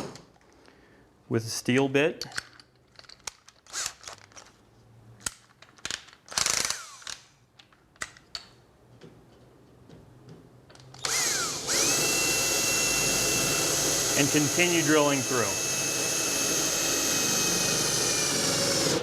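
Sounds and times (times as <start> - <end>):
drill chuck clicking and ratcheting: 2.2 - 4.5, 5.2 - 7.3, 10.8 - 12.8
power drill whine: 11.0 - 19.0.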